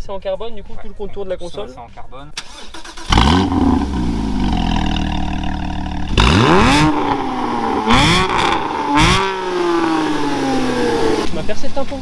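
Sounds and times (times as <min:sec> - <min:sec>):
car engine revving: 0:02.4 - 0:11.5
car engine idling: 0:02.4 - 0:12.0.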